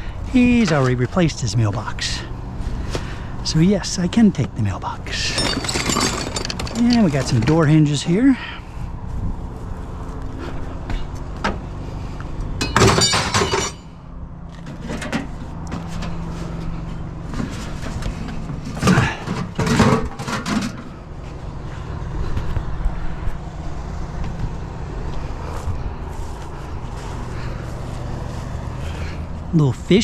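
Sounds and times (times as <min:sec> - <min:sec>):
steady low rumble: 0:00.0 - 0:12.6
scrap metal clattering: 0:05.1 - 0:07.7, 0:12.6 - 0:13.9, 0:17.3 - 0:21.0.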